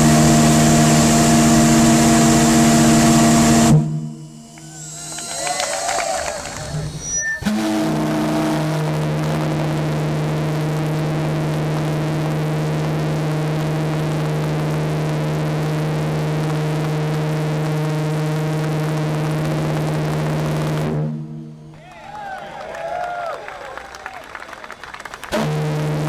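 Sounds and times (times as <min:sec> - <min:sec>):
low steam whistle blast: 0:00.0 - 0:10.7
steam hissing: 0:04.6 - 0:09.2.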